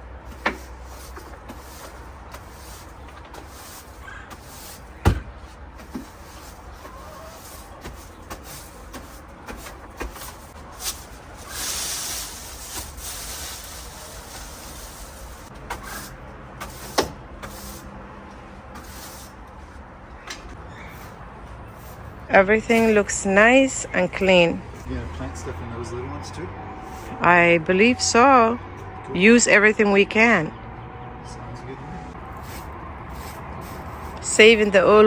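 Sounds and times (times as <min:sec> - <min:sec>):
rustling scrape: 0:00.3 - 0:17.9, 0:18.7 - 0:19.8, 0:20.8 - 0:23.2, 0:32.1 - 0:34.8.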